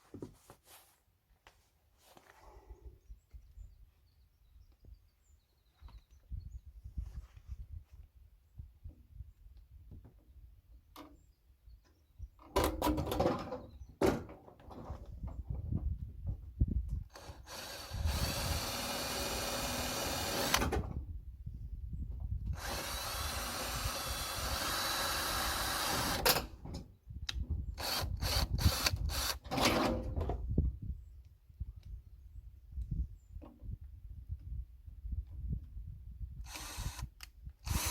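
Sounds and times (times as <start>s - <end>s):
power drill running in bursts: 17.2s - 20.7s, 22.6s - 26.3s, 36.5s - 37.0s.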